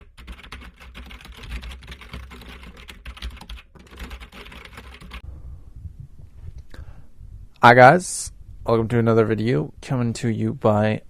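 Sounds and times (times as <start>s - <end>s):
fast typing on keyboard: 0.0s - 5.2s.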